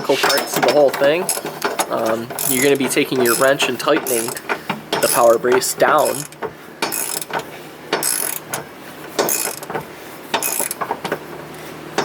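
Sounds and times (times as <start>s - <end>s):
ratchet wrench clicking: 1.2s - 4.4s, 5.0s - 7.4s, 8.0s - 8.6s, 9.2s - 9.7s, 10.4s - 10.8s.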